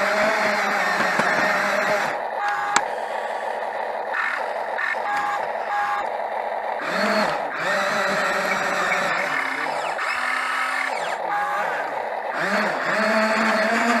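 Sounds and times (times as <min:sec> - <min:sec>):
diesel engine running: 0:00.0 - 0:14.0
backup alarm beeping: 0:02.4 - 0:02.8, 0:04.9 - 0:06.1.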